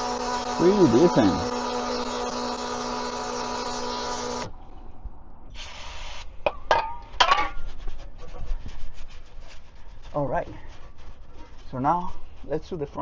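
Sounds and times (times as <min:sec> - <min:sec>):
electric pump whining: 0:00.0 - 0:04.8
short hiss: 0:05.5 - 0:06.3.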